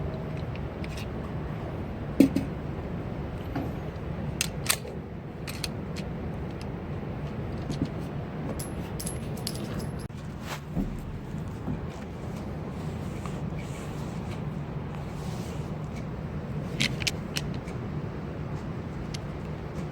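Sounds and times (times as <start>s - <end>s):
sharp metallic clicks and clinks: 8.6s - 10.1s.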